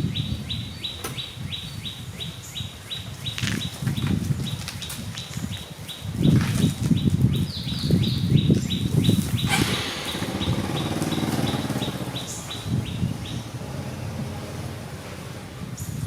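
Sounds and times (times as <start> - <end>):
bird chirping: 0.0 - 14.7
low rumbling and bumping: 8.0 - 16.0.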